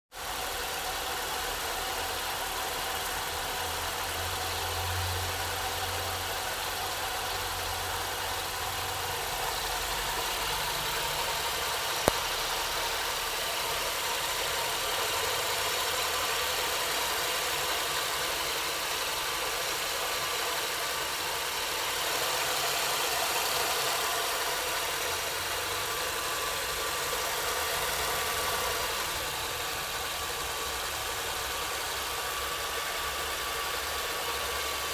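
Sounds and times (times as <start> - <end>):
car engine idling: 0.1 - 34.9
sharp click: 12.0 - 12.4.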